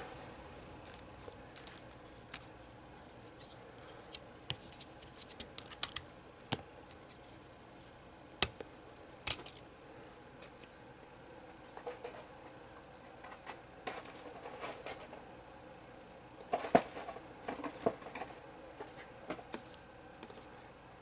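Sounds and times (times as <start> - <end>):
plastic pieces clicking together: 3.4 - 6.0, 9.2 - 9.6.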